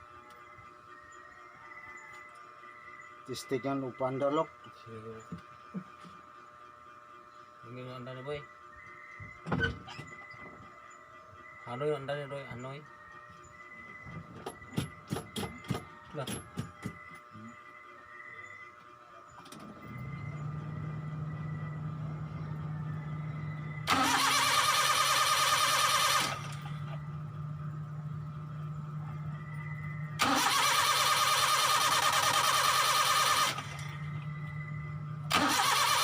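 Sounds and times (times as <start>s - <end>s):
engine bursts: 19.3s - 36.0s
car engine humming: 19.7s - 36.0s.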